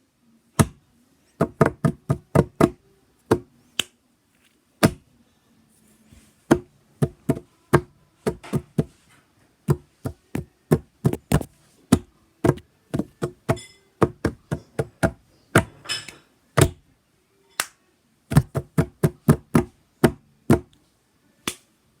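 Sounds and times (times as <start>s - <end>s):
hand knocking on hollow surface: 1.4s - 3.5s, 6.5s - 9.0s, 9.7s - 15.8s, 18.3s - 20.7s.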